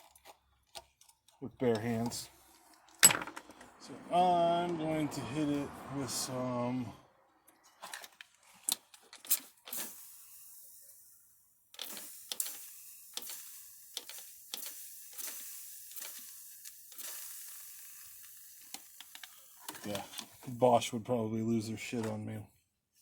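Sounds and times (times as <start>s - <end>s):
hot metal sizzling and crackling: 9.3s - 20.7s.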